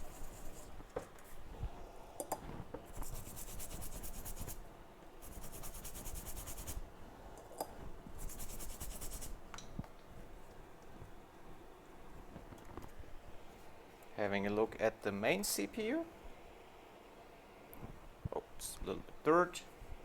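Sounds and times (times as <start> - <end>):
scrubbing metal stencil: 0.0 - 0.7, 2.9 - 4.6, 5.2 - 6.8, 8.2 - 9.4.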